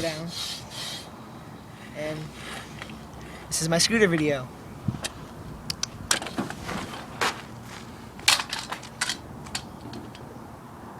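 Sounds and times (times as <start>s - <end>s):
scooter clacking and scraping: 6.1s - 10.3s.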